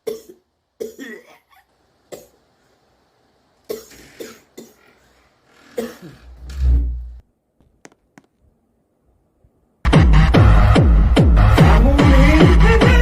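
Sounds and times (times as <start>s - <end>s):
person coughing: 0.1s - 2.4s, 5.7s - 6.4s.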